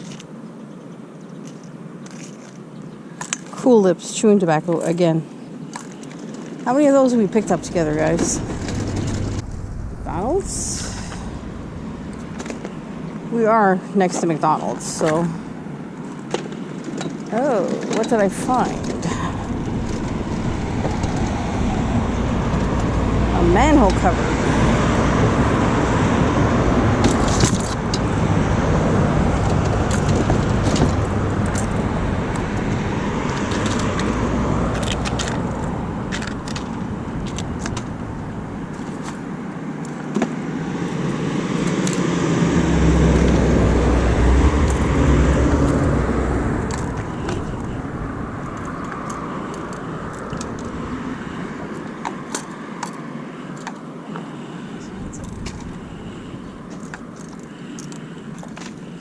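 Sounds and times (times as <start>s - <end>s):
cars passing: 6.4s - 59.0s
metallic rattles: 6.7s - 13.6s.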